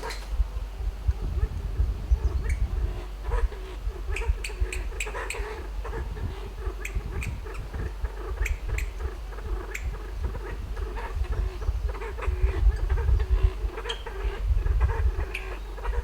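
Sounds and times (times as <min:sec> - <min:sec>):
bird sharp clicking calls: 0:00.0 - 0:00.3, 0:04.1 - 0:06.0, 0:06.6 - 0:07.6, 0:08.4 - 0:10.5
steady low rumble: 0:00.0 - 0:16.0.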